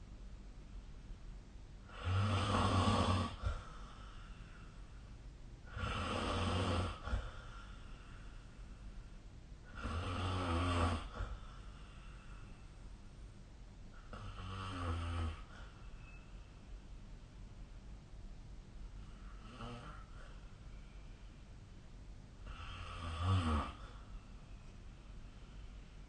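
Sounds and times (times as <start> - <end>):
person snoring: 1.9 - 3.7, 5.7 - 7.7, 9.7 - 11.4, 14.0 - 15.6, 19.1 - 20.3, 22.4 - 24.0.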